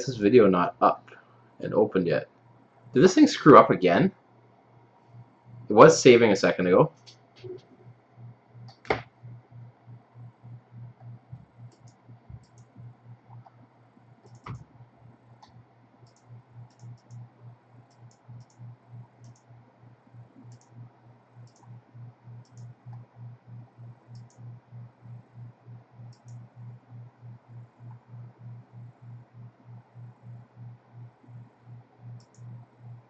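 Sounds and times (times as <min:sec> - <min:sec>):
pulsing low hum: 0:07.4 - 0:33.0
computer mouse clicks: 0:11.0 - 0:13.6, 0:14.2 - 0:14.7, 0:15.4 - 0:19.5, 0:20.4 - 0:20.8, 0:21.4 - 0:21.8, 0:22.4 - 0:23.1, 0:24.0 - 0:24.5, 0:26.0 - 0:26.6, 0:32.1 - 0:32.6.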